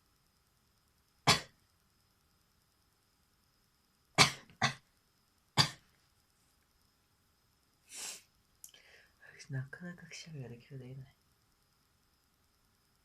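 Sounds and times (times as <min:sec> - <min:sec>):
person's sharp breath bursts: 0:07.9 - 0:09.2.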